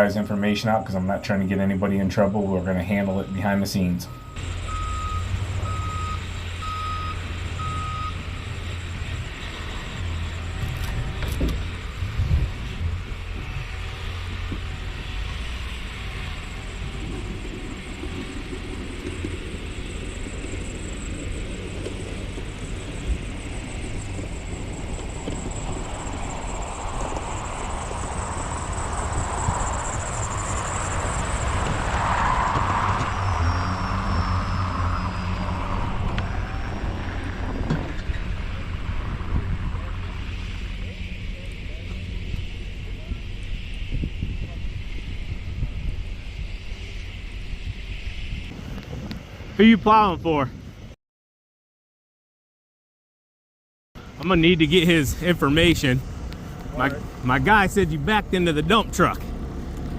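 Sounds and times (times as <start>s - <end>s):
vehicle engine running: 0.0s - 32.1s, 54.0s - 59.9s
backup alarm beeping: 1.6s - 10.8s
machine noise: 1.6s - 48.6s.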